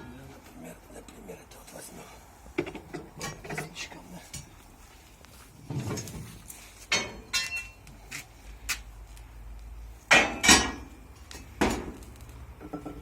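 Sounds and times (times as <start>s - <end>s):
knocks and clanks of tools: 2.6s - 3.8s, 6.9s - 7.8s, 10.1s - 12.0s, 12.6s - 13.0s.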